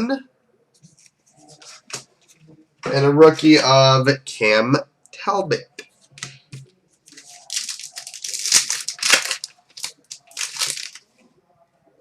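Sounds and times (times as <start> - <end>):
card pack wrapper crinkling and tearing: 7.1 - 11.0.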